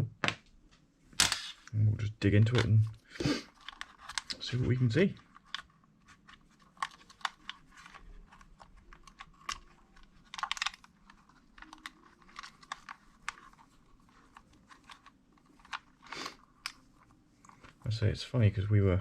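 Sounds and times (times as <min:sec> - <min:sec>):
small plastic and metal parts clicking: 0:03.4 - 0:17.8.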